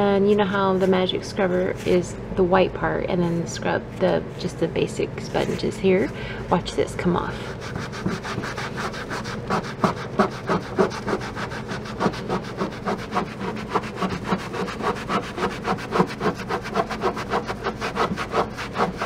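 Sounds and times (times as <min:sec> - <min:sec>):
sponge scrubbing a plastic shelf: 0:07.4 - 0:19.0.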